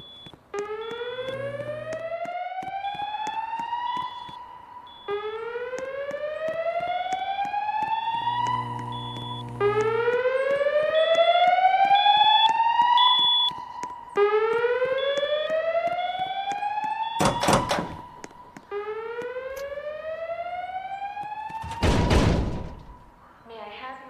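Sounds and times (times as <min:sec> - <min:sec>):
slow whoop alarm tone: 0:00.6 - 0:17.5.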